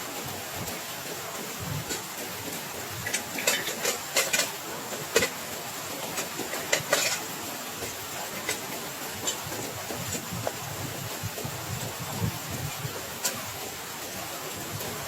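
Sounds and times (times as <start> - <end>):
rain hiss: 0.0 - 15.0.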